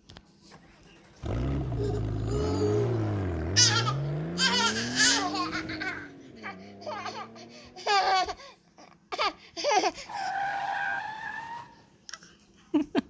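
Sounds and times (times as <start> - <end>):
engine sound effect: 1.2 - 8.1
baby laughing and squealing: 1.6 - 8.5, 9.1 - 10.3.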